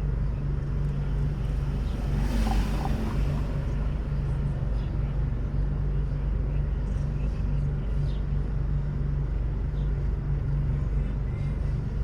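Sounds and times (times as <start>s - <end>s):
car engine and road rumble: 0.0s - 6.5s.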